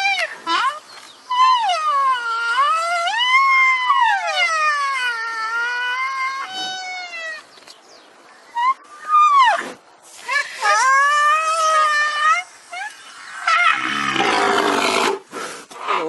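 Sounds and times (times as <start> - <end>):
rhinoceros calling: 8.5 - 15.3.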